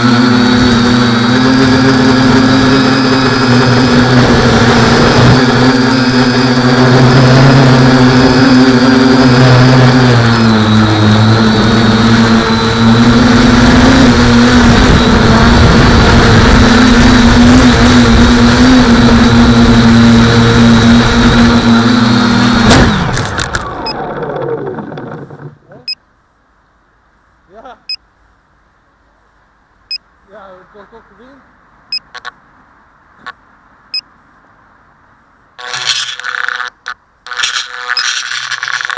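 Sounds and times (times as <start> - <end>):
drone motors whirring: 0.0 - 25.6, 35.6 - 38.9.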